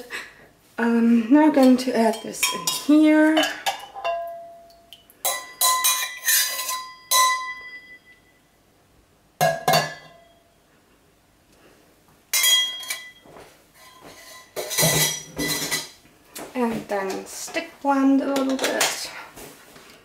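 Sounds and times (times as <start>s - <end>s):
containers clinking against glass: 1.6s - 8.0s.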